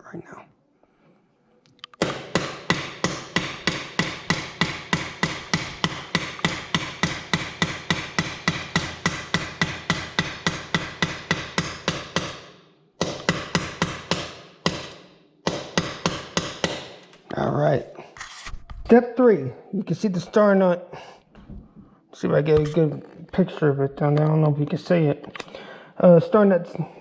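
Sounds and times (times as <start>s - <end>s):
hammer tapping metal: 2.0s - 17.2s.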